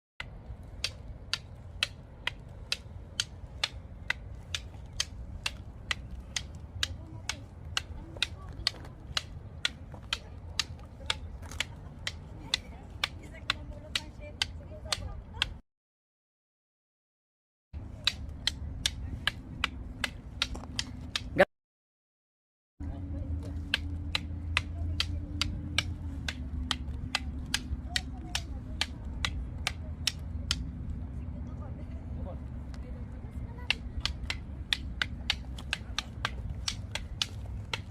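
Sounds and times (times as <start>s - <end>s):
sticks clacking together: 0.7s - 15.5s, 18.0s - 21.4s, 23.7s - 30.7s, 33.7s - 37.9s.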